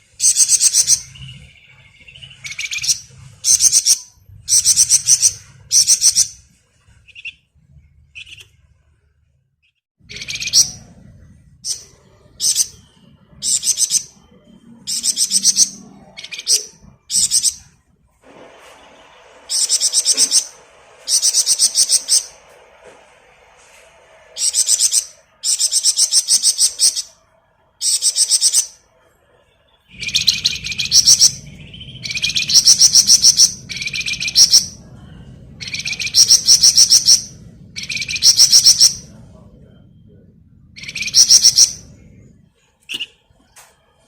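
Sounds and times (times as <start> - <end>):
songbird trilling song: 2.0 - 6.4, 10.1 - 11.0, 11.7 - 17.7, 19.5 - 22.3, 24.4 - 27.1, 29.9 - 39.8, 40.8 - 42.1
low rumble: 10.0 - 18.2, 29.9 - 38.4, 39.0 - 41.2, 41.8 - 42.8.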